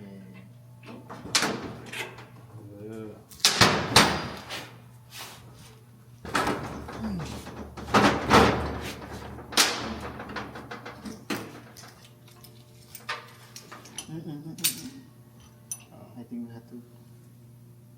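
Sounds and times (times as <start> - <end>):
metal parts knocking and clanking: 6.3 - 14.9.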